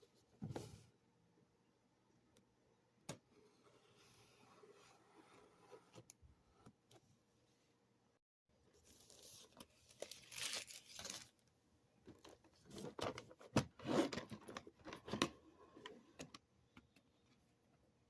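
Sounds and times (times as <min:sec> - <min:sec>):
paper and plastic crinkling: 0:08.8 - 0:11.4
packaging tearing: 0:10.0 - 0:11.4.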